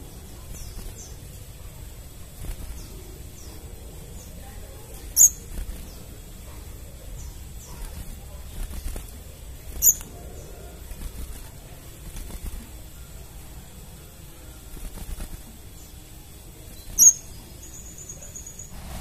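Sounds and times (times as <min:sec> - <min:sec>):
bird high-pitched call notes: 0:17.0 - 0:18.7.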